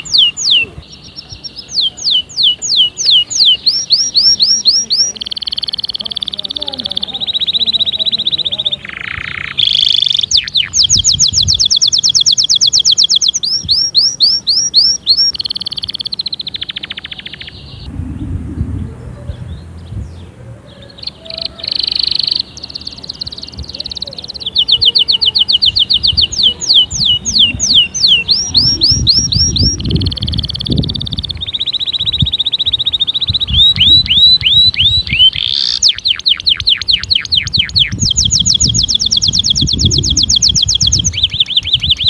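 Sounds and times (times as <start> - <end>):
canary singing rapid trills: 0.0 - 17.9, 18.9 - 42.0
low rumble: 17.6 - 20.9.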